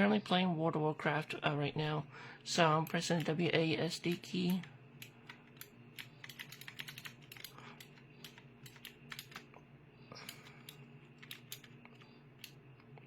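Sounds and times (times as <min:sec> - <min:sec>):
faint steady hum: 0:00.0 - 0:13.0
mechanical keyboard keys clicking: 0:04.0 - 0:09.5, 0:10.3 - 0:12.6.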